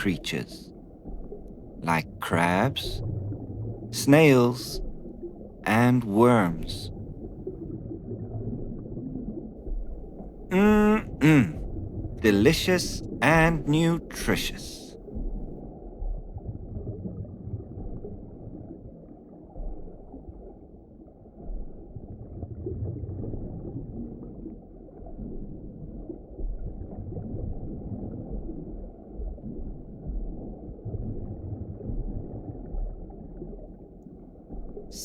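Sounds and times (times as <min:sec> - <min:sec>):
muffled underwater ambience: 0:00.0 - 0:09.2, 0:10.5 - 0:14.9, 0:34.7 - 0:35.0.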